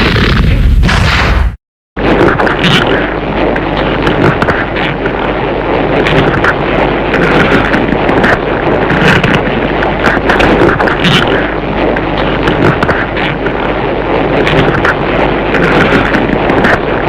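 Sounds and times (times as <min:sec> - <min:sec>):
rumble with crackling and popping: 0:00.0 - 0:17.0.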